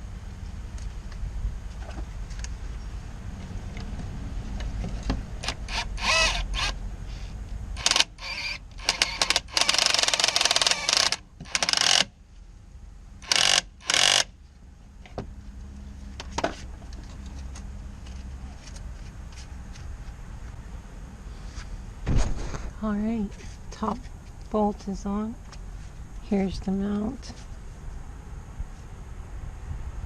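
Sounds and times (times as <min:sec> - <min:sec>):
impact wrench hammering bolts: 0:07.8 - 0:12.1, 0:13.2 - 0:14.3.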